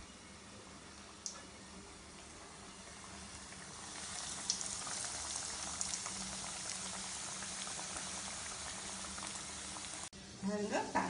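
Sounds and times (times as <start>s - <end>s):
food sizzling in hot oil: 2.7s - 11.0s.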